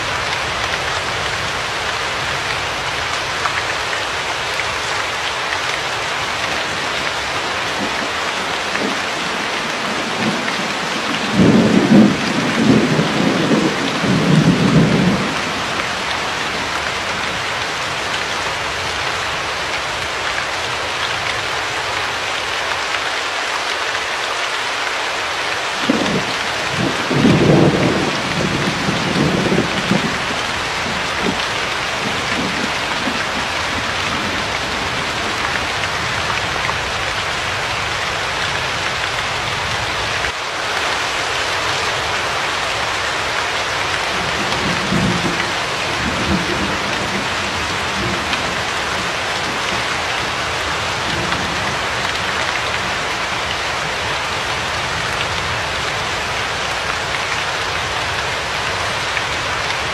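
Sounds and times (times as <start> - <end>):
heavy rain: 0.0 - 59.9
thunder rumbling: 7.4 - 17.3, 25.8 - 37.6, 44.0 - 55.6.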